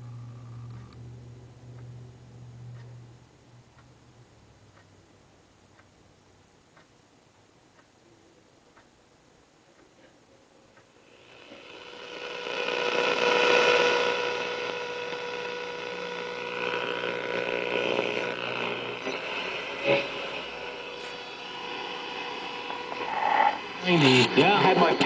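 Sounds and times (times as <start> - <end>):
radio static hiss: 10.9 - 25.0.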